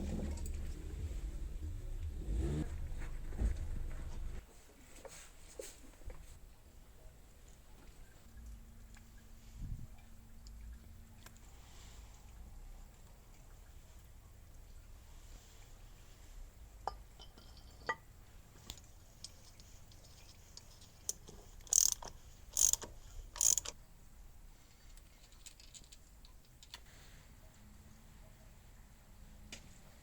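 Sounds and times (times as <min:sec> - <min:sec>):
metal tools clicking and clinking: 0:18.7 - 0:23.8.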